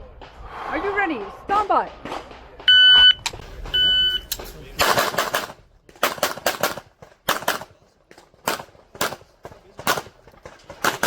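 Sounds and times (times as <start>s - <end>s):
pistol shots with echo: 4.8s - 7.8s, 8.4s - 11.0s.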